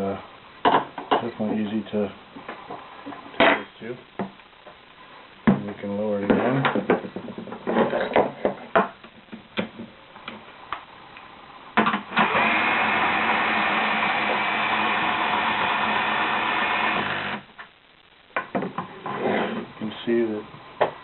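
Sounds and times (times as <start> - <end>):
power drill running: 12.1 - 17.4.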